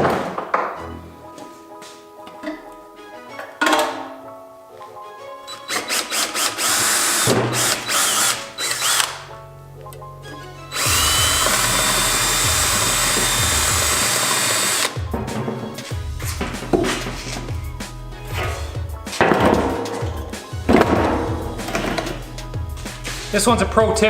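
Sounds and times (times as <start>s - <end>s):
background music: 0.0s - 24.0s
power drill running: 5.5s - 9.2s, 10.7s - 15.0s.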